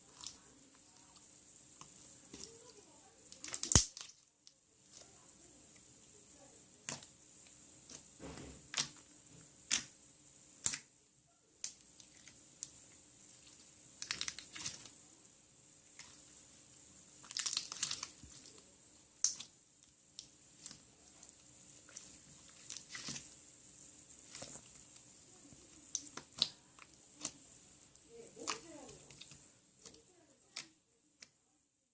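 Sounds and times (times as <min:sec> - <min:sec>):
slime popping and crackling: 0:01.0 - 0:04.2, 0:06.8 - 0:10.9, 0:13.4 - 0:15.0, 0:17.1 - 0:18.6, 0:19.2 - 0:30.7.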